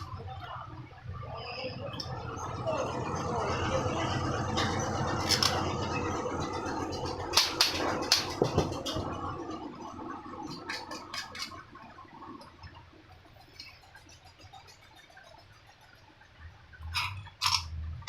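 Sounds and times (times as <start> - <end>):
small metal parts clicking: 16.9 - 17.7.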